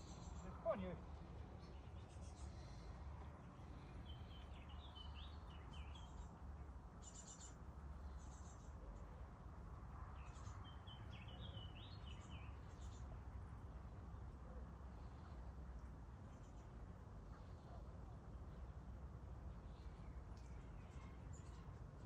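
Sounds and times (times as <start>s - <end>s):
faint steady low rush: 0.0s - 22.0s
songbird chirping: 0.0s - 22.0s.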